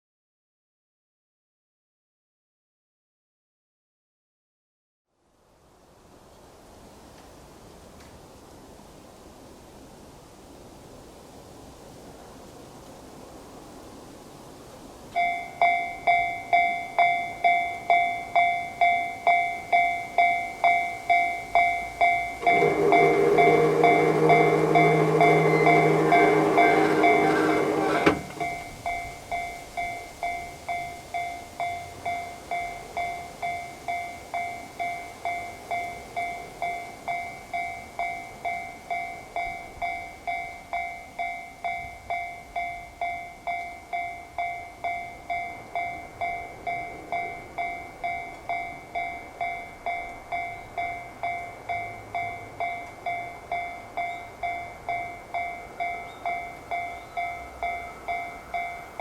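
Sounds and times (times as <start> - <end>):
level crossing warning bell: 15.1 - 59.0.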